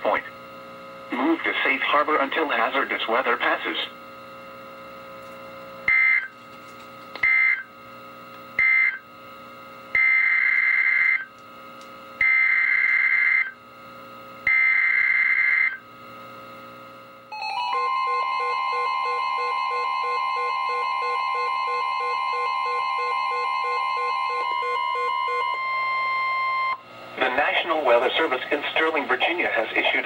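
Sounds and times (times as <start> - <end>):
steady alert tone with pulsing beep: 17.3 - 26.8.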